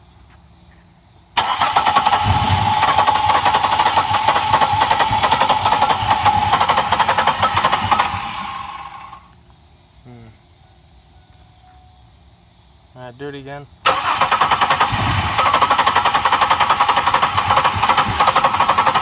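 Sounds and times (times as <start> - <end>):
starter motor cranking engine: 1.4 - 9.3, 13.8 - 19.0.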